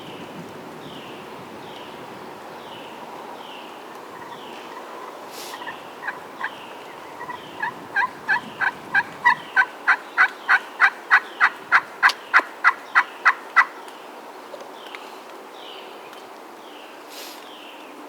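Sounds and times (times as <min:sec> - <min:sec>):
turkey yelps: 0:04.1 - 0:13.8.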